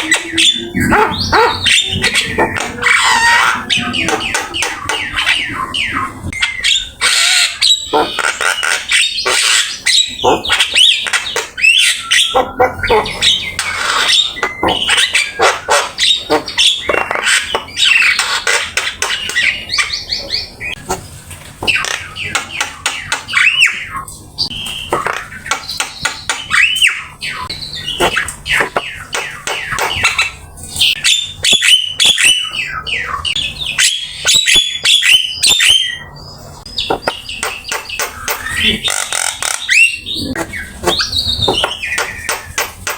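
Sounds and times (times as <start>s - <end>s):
myna squawks chatter and whistles: 0.0s - 17.5s.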